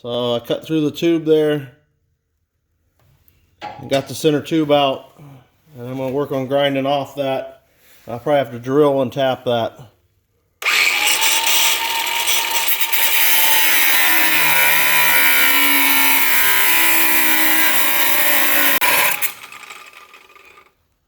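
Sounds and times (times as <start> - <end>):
power grinder grinding steel: 10.6 - 20.8.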